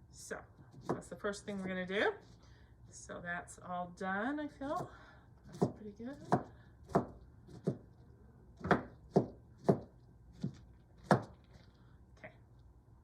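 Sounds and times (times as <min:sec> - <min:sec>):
knife chopping on cutting board: 0:00.7 - 0:01.1, 0:05.5 - 0:07.8, 0:08.6 - 0:11.4.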